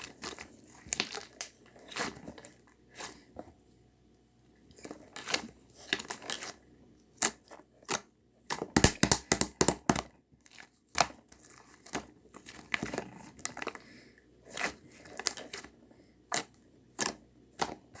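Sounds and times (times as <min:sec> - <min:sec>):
slime squished by hand: 0:07.2 - 0:10.0.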